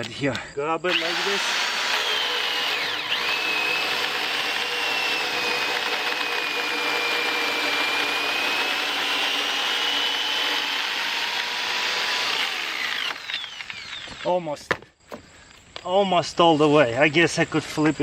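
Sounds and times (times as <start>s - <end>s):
electric chainsaw cutting log: 0.9s - 14.4s.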